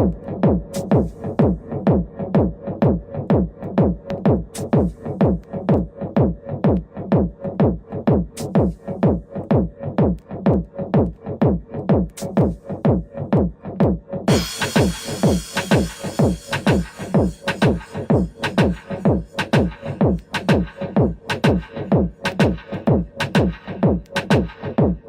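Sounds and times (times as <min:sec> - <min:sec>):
electronic dance music: 0:00.0 - 0:25.0
kick drum thumps: 0:00.0 - 0:25.0
hissing cymbals: 0:14.3 - 0:19.0.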